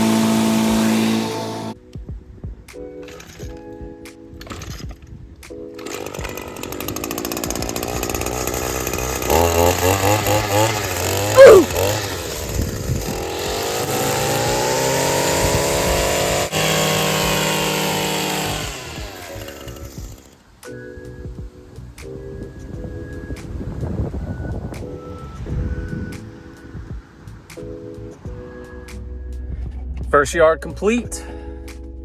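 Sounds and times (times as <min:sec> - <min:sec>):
lawn mower engine cutting grass: 0:00.0 - 0:01.8, 0:05.7 - 0:20.5.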